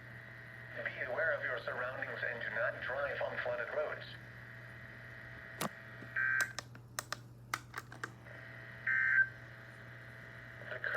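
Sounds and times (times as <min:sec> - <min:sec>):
steady low hum: 0:00.0 - 0:10.9
sharp clicks: 0:06.4 - 0:08.2.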